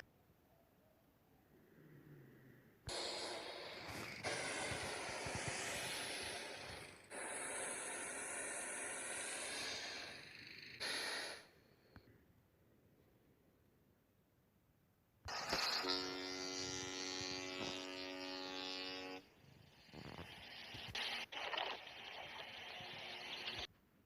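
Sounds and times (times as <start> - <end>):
loud hiss of escaping air: 2.9 - 11.6.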